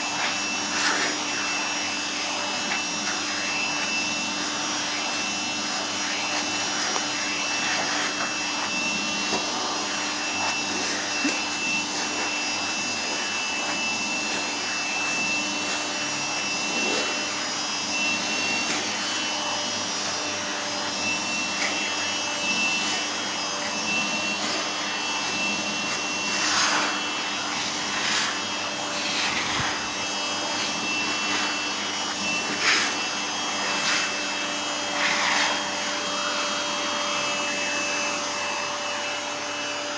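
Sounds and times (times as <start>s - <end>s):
vacuum cleaner whining: 0.0s - 39.9s
nozzle swishing on fur: 25.6s - 35.8s.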